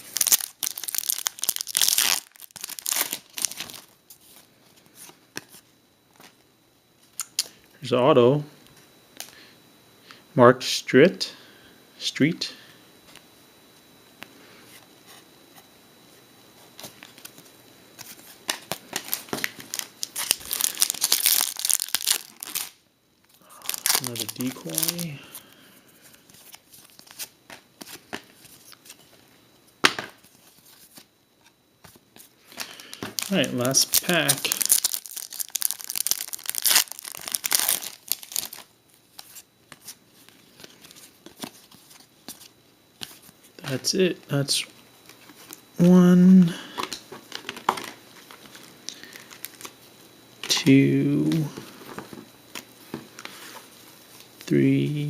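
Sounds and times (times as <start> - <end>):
foil wrapper crinkling and tearing: 0.0 - 4.0, 18.5 - 22.8, 23.4 - 25.4, 32.5 - 42.0, 46.9 - 49.8
cards clicking and rustling: 0.2 - 3.9, 18.0 - 22.7, 31.8 - 43.3.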